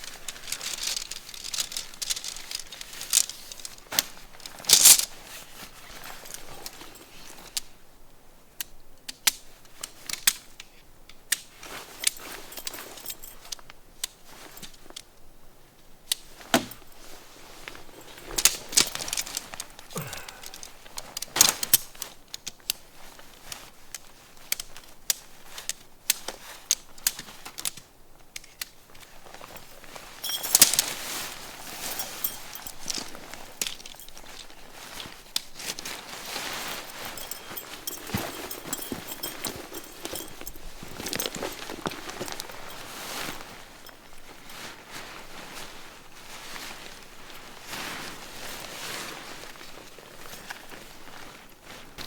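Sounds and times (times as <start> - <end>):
tent gear clicking: 0.0 - 7.7, 16.1 - 22.8, 23.5 - 44.7.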